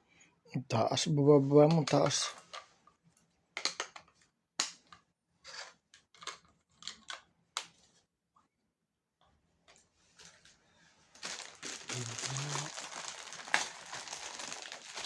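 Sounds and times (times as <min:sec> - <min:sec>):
packaging rustling and crinkling: 0:11.1 - 0:15.0
packaging snapping and clicking: 0:11.3 - 0:15.0.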